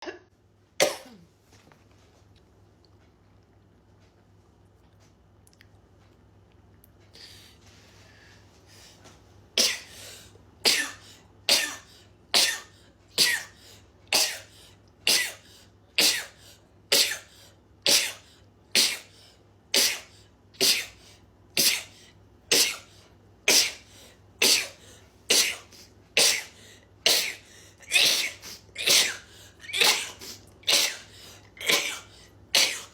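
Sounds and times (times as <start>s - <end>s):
woman sneezing: 28.0s - 32.9s.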